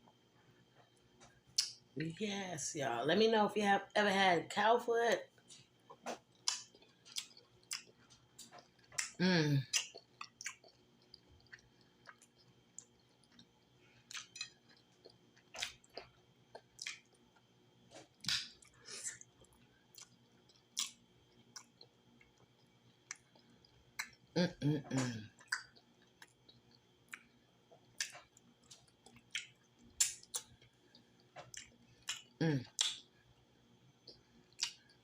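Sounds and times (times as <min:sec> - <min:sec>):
wet chewing and lip-smacking: 0:05.4 - 0:24.3, 0:25.3 - 0:33.1, 0:34.0 - 0:35.0
person humming: 0:09.2 - 0:09.6, 0:24.4 - 0:25.2, 0:32.4 - 0:32.6.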